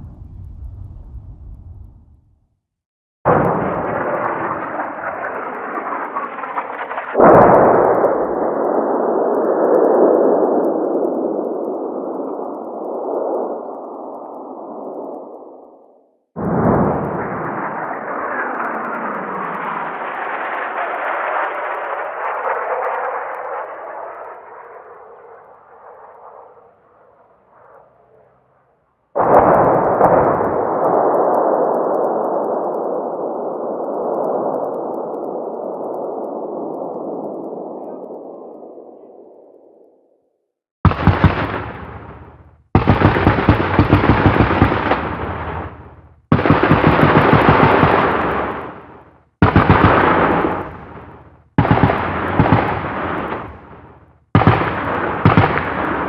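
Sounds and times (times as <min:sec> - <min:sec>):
cannon blast rumble: 0:00.0 - 0:02.4, 0:03.3 - 0:15.1, 0:16.4 - 0:28.5, 0:29.2 - 0:35.6, 0:40.8 - 0:56.0
sudden blast: 0:00.0 - 0:02.4, 0:03.3 - 0:10.2, 0:16.4 - 0:22.9, 0:40.8 - 0:46.8.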